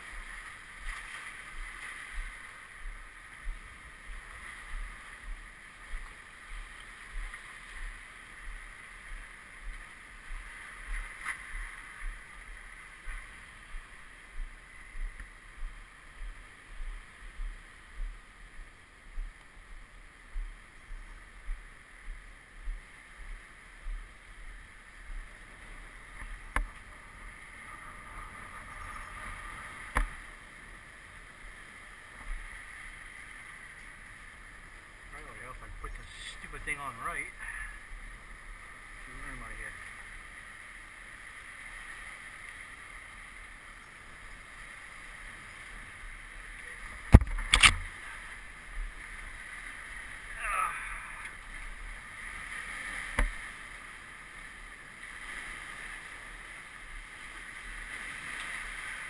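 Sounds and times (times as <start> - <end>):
faint steady hiss: 0.0 - 59.0
steady low thumps: 1.5 - 25.4
sharp clicks: 47.2 - 47.9.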